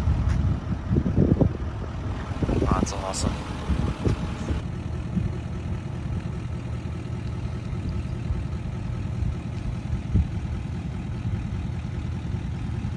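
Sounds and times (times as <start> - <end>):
truck engine idling: 0.0 - 12.9.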